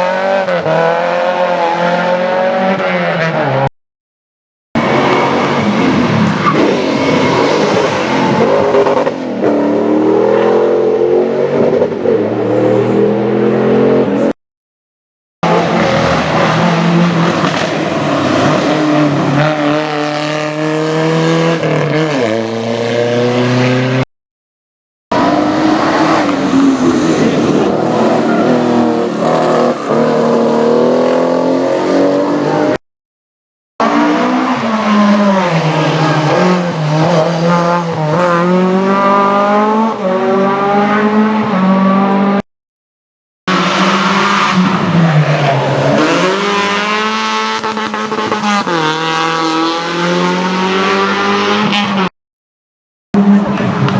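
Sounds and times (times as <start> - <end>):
rally car engines revving past: 15.4 - 24.0, 33.8 - 42.4, 43.5 - 52.1.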